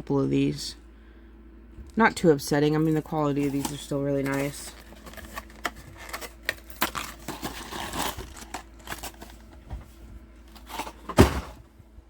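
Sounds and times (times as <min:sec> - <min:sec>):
packaging clicking and rustling: 0:03.4 - 0:09.6, 0:10.5 - 0:11.3.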